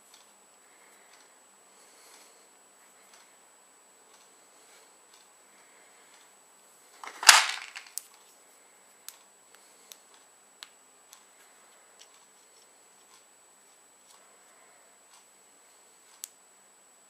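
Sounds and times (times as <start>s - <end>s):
light ticks: 16.1s - 16.4s.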